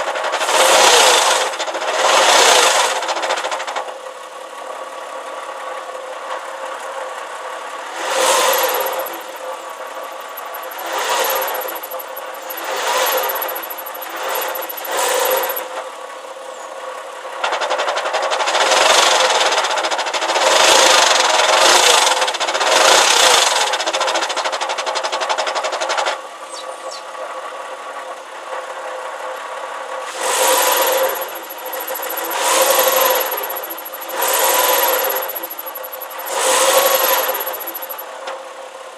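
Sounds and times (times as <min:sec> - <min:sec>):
gearbox rumbling and squeaking: 0:00.0 - 0:03.9, 0:08.0 - 0:15.8, 0:17.4 - 0:27.2, 0:30.1 - 0:38.2
car engine idling: 0:00.0 - 0:38.9.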